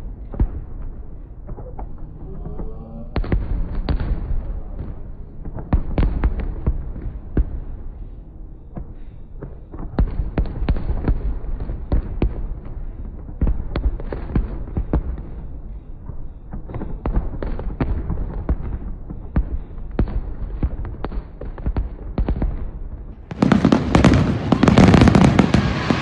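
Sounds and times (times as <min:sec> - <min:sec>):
low rumble of booms: 0:00.0 - 0:08.0
fireworks bursting: 0:03.2 - 0:08.0, 0:16.4 - 0:26.0.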